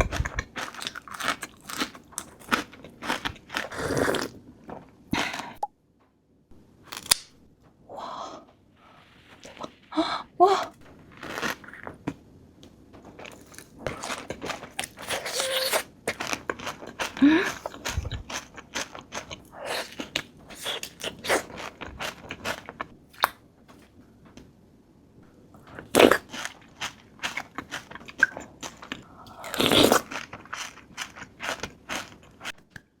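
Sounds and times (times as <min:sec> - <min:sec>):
crunchy cookie chewing: 0:00.0 - 0:05.3, 0:10.9 - 0:12.2, 0:13.1 - 0:23.3, 0:25.6 - 0:32.7.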